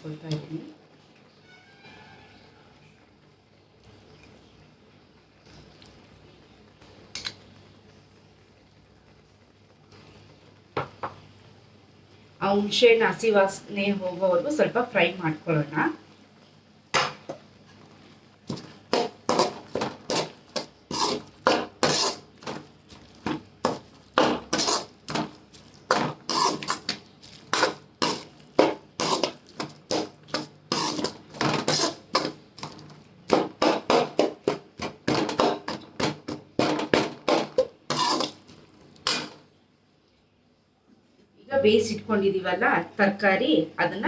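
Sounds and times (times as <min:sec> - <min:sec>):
spoon clanking and scraping pan: 0:18.5 - 0:39.4.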